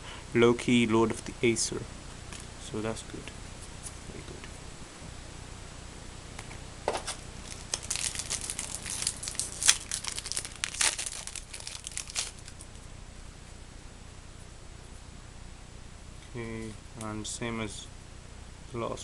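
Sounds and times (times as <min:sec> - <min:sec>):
foil wrapper tearing and crinkling: 0:07.4 - 0:12.8.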